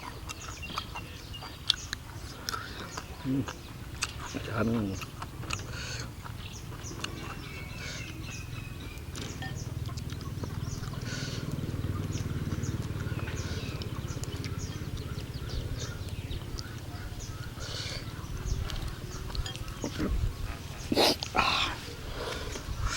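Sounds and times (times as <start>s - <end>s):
chewing and slurping noodles: 0.0s - 22.9s
mouth clicks: 0.2s - 7.4s, 20.8s - 21.8s.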